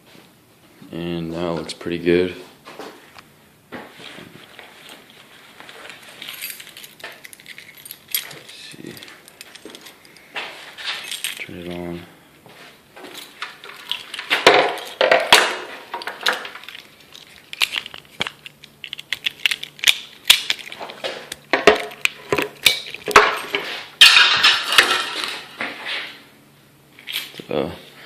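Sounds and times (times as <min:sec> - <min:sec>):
small metal objects clinking: 0:05.9 - 0:10.2, 0:10.9 - 0:11.6, 0:13.2 - 0:25.5.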